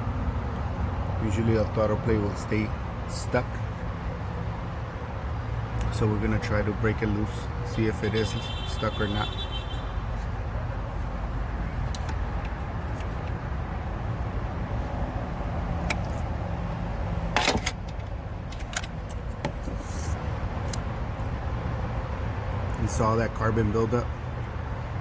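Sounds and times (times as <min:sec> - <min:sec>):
metallic clicks and knocks: 0:17.3 - 0:19.8.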